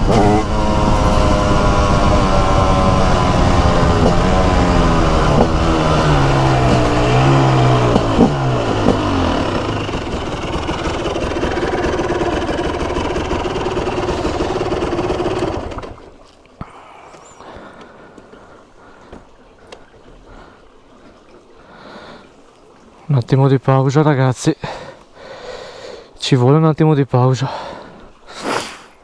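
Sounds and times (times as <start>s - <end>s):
motorcycle engine slowing down: 0.0s - 16.2s.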